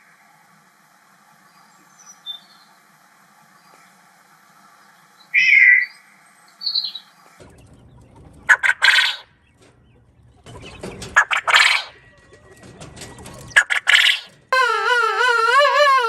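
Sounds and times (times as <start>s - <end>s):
bird calls: 6.6s - 12.4s, 13.2s - 16.0s
harsh bird calls with clicks: 8.5s - 9.7s, 13.6s - 16.0s.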